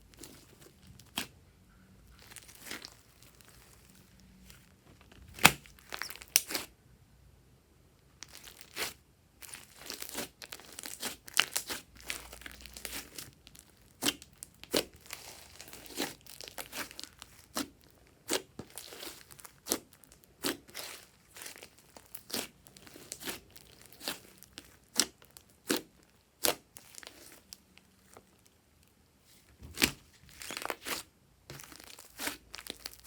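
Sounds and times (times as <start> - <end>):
slime popping and crackling: 2.1 - 4.1, 5.2 - 6.7, 8.2 - 27.6, 29.6 - 33.0.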